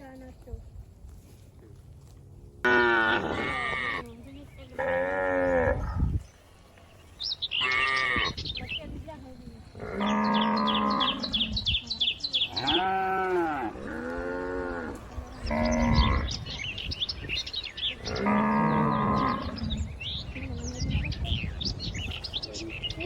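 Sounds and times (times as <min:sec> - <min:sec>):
cattle mooing: 0:02.6 - 0:04.1, 0:04.7 - 0:06.0, 0:07.6 - 0:08.4, 0:09.8 - 0:11.5, 0:12.4 - 0:16.6, 0:17.9 - 0:19.9
birds chirping: 0:02.7 - 0:23.0.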